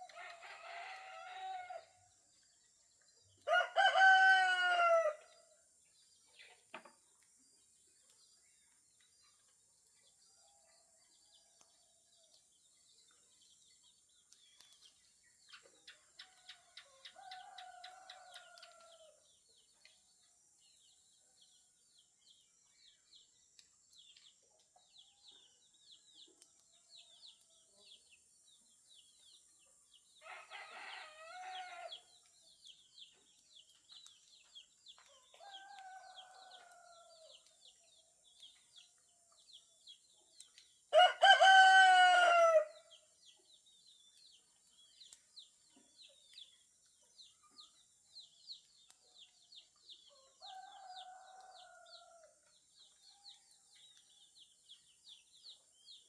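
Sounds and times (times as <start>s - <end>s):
roosters crowing: 3.5s - 5.2s, 30.2s - 31.9s, 40.9s - 42.8s
small birds chirping: 5.3s - 56.0s.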